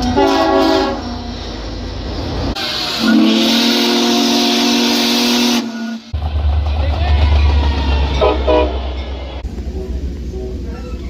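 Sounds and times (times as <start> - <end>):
train horn chord: 0.0 - 1.2, 2.8 - 6.1, 8.2 - 8.9
deep engine rumble: 6.1 - 11.0.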